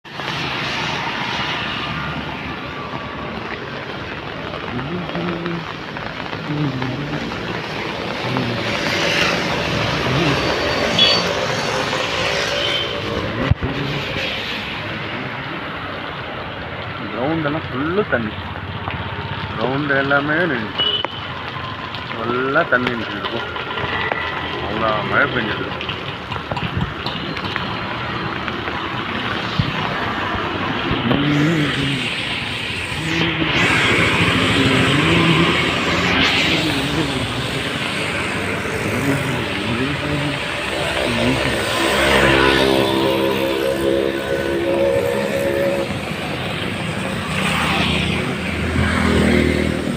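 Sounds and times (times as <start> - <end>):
passing car engines: 0.0 - 17.0, 27.4 - 49.9
vehicles on wet road: 0.0 - 49.9
heavy rain hiss: 0.1 - 27.0, 27.6 - 49.9.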